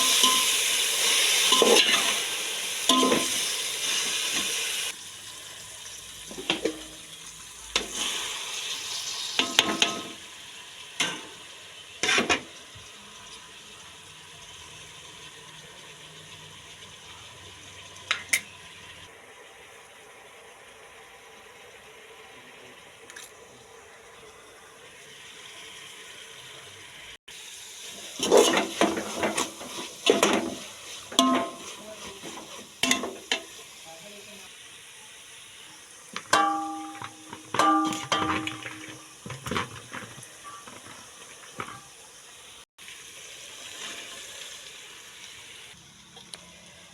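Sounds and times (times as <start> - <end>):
utensil knocking and scraping pan: 28.2 - 33.5, 36.2 - 41.9.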